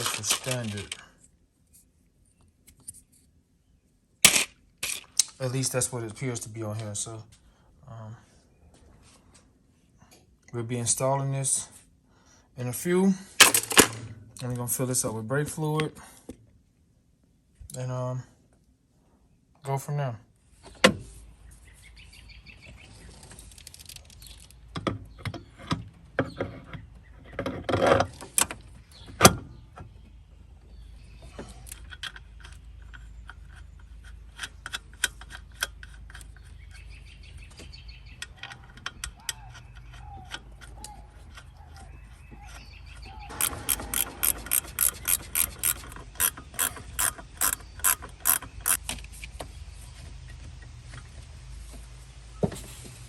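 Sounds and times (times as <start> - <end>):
tools knocking and clanking: 42.4 - 48.8
ratchet wrench clicking: 43.3 - 48.8.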